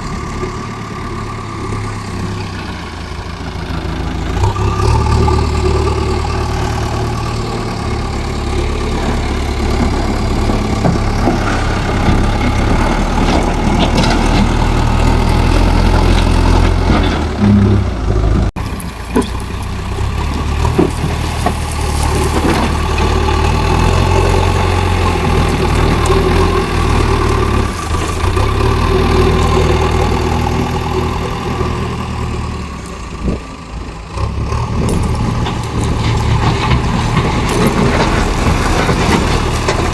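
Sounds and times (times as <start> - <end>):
diesel loader engine: 0.0 - 39.9
clanks and knocks: 9.0 - 14.8, 34.8 - 39.9.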